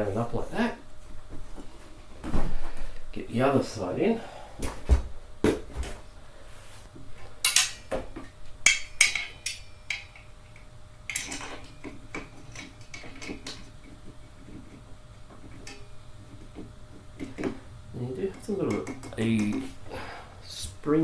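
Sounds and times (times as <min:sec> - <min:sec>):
chair parts clicking and scraping: 0:07.0 - 0:20.0.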